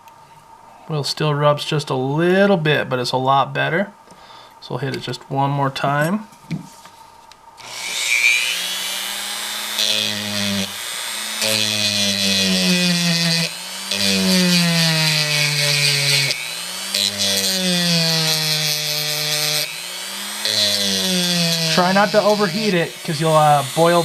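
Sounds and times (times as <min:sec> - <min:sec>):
rotary tool grinding metal: 0:07.6 - 0:24.0.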